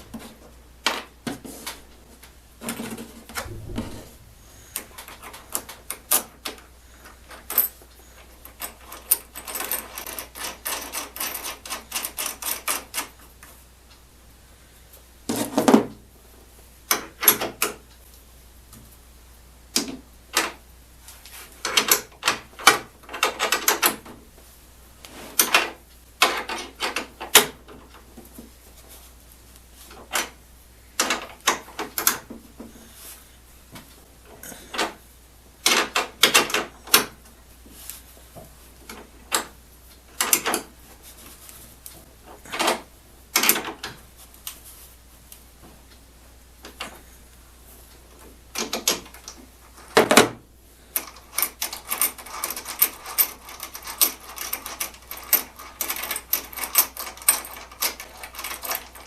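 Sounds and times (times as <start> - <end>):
knocks and clatter of hardware: 51.0 - 59.0.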